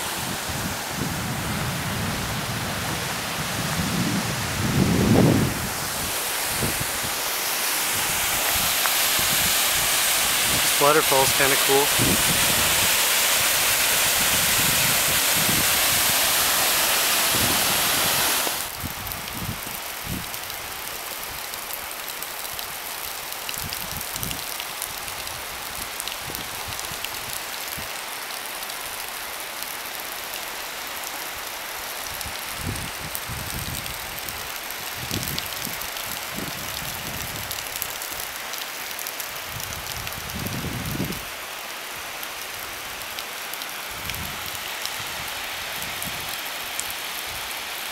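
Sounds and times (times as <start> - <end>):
waterfall rushing: 0.0 - 18.8, 41.3 - 47.9.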